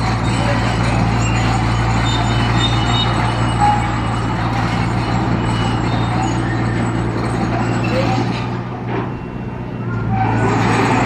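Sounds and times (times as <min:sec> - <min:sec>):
heavy diesel engine running: 0:00.0 - 0:11.0
faint high squeals: 0:00.2 - 0:08.5.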